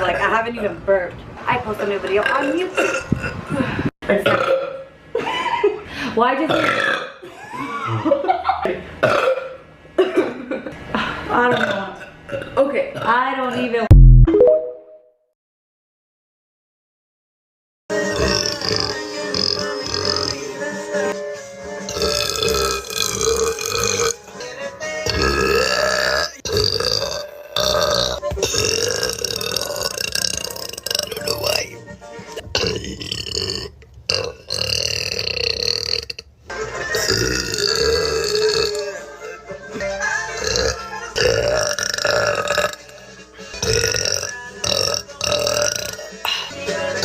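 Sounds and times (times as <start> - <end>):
woman burping: 2.2 - 4.9, 6.4 - 7.3, 9.0 - 10.5, 11.3 - 13.9, 21.9 - 24.2, 25.1 - 31.5, 37.0 - 39.0, 40.4 - 43.0, 43.6 - 46.5.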